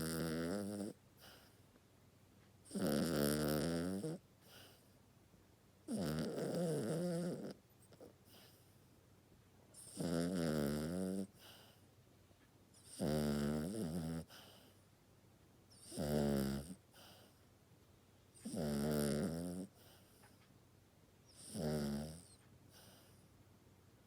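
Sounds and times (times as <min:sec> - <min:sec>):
dog snoring: 0:00.0 - 0:01.6, 0:02.6 - 0:04.9, 0:05.9 - 0:08.7, 0:09.7 - 0:11.8, 0:12.8 - 0:14.8, 0:15.7 - 0:17.4, 0:18.4 - 0:20.4, 0:21.3 - 0:23.2.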